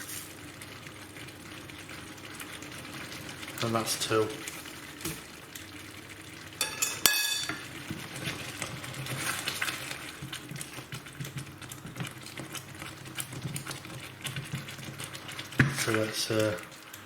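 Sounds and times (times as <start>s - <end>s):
metal spoon clinking on a pan: 6.6s - 7.7s
utensil scraping in a pan: 6.6s - 10.3s.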